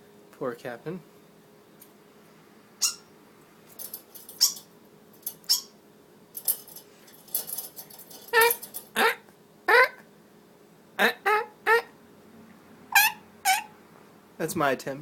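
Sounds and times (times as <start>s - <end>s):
small bird chirping: 2.8s - 3.1s, 4.3s - 4.7s, 5.4s - 5.8s
person imitating bird calls: 8.3s - 10.1s, 11.0s - 12.0s, 12.9s - 13.7s.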